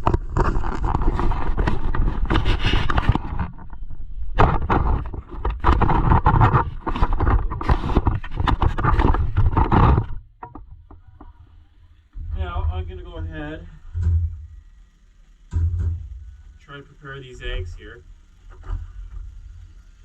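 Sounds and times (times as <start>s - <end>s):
camera handling noise on microphone: 0.0s - 11.4s.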